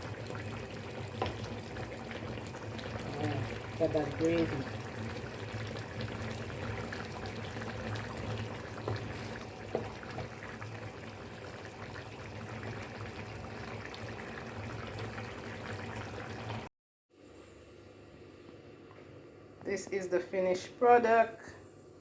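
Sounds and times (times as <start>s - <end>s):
pot simmering with bubbling hiss: 0.0s - 16.7s.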